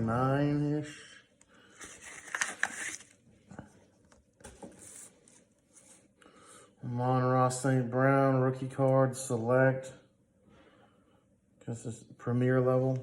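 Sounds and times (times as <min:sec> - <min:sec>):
crinkly wrapper rustling: 0:01.8 - 0:03.2.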